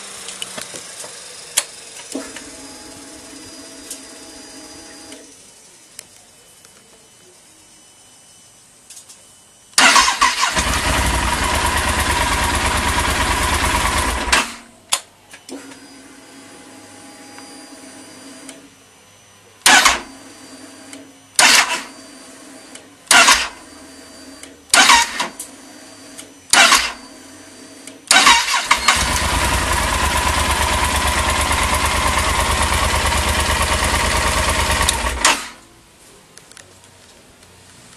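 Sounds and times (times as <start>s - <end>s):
motorcycle starter cranking: 9.8s - 14.6s, 19.7s - 20.1s, 23.1s - 23.6s, 24.8s - 25.3s, 26.6s - 27.0s, 28.1s - 35.6s.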